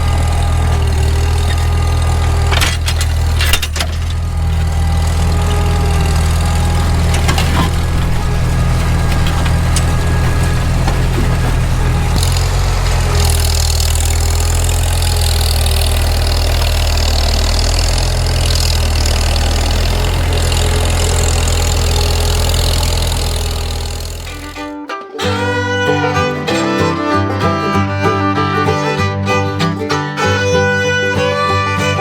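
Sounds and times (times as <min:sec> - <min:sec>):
tractor engine running: 0:00.0 - 0:32.0.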